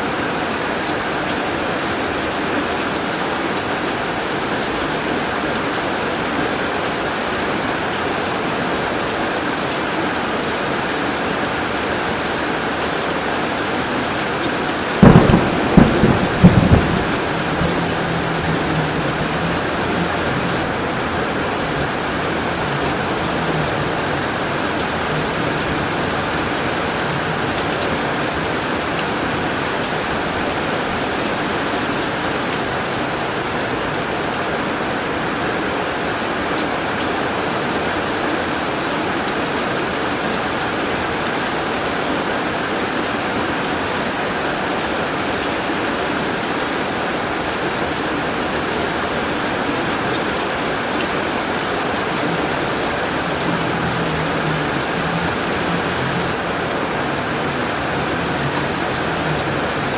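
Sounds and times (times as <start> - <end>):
heavy rain on a tin roof: 0.0 - 59.9
thunder cracks and rumble: 15.0 - 29.7.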